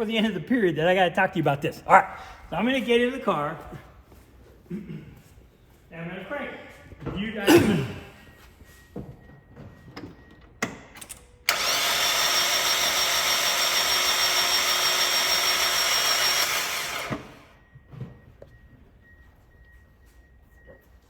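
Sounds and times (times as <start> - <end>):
engine cranking on starter: 11.0 - 17.6.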